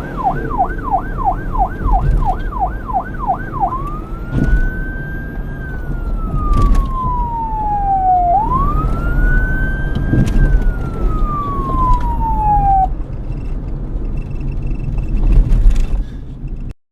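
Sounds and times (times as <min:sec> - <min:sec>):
police siren wailing: 0:00.0 - 0:13.0
low road rumble: 0:00.0 - 0:16.8.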